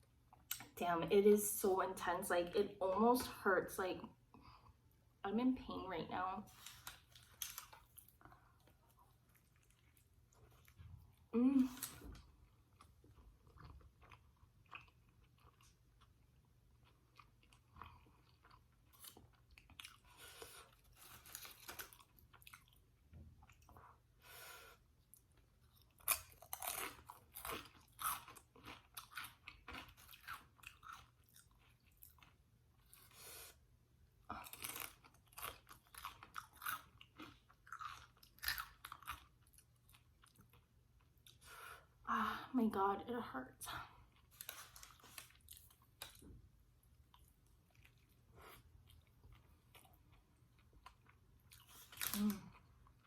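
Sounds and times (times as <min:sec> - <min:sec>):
chewing crunchy chips: 0:06.5 - 0:24.0, 0:25.0 - 0:33.2, 0:34.3 - 0:41.5, 0:47.1 - 0:53.0.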